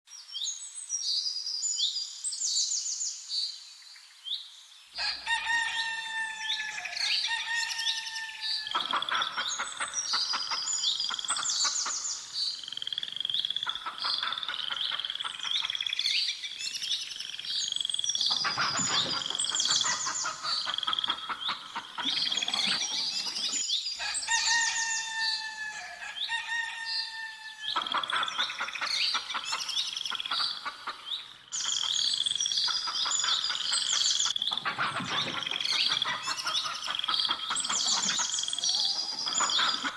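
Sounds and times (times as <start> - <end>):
songbirds chirping: 0.1 - 39.9
rooster crowing: 5.0 - 8.8, 24.0 - 27.7.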